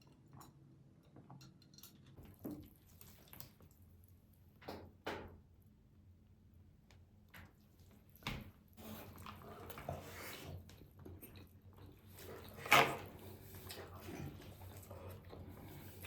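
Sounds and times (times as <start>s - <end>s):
wet chewing: 9.1s - 16.0s.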